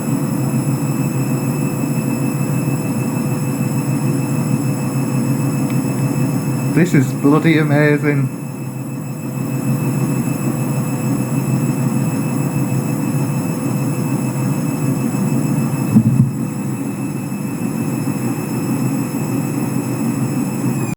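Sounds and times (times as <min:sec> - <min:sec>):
washing machine motor whine: 0:00.0 - 0:20.9
low churning rumble: 0:15.9 - 0:16.7
brief thump: 0:16.0 - 0:16.4.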